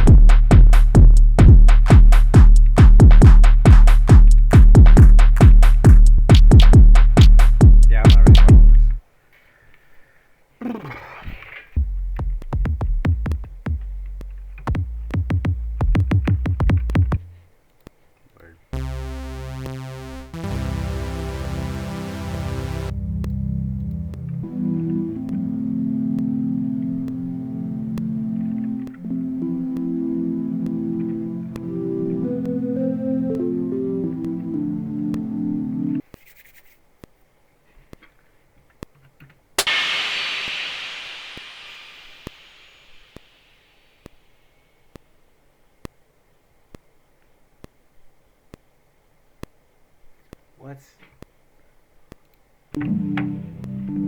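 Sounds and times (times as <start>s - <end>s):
drum machine beat: 0.0s - 9.0s, 11.8s - 17.4s, 18.8s - 22.9s, 39.6s - 42.7s
sustained low bass note: 18.8s - 24.7s
buzzy synth tone: 18.8s - 36.0s, 39.6s - 44.0s.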